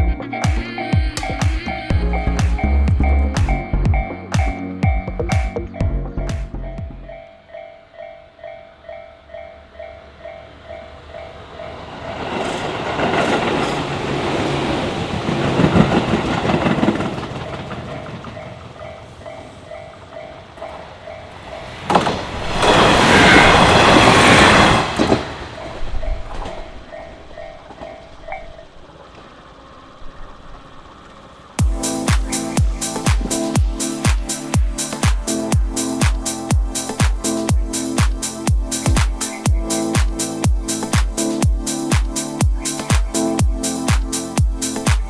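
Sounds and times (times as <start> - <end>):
trains passing: 0.0 - 45.0
level-crossing bell clanging: 2.0 - 28.5.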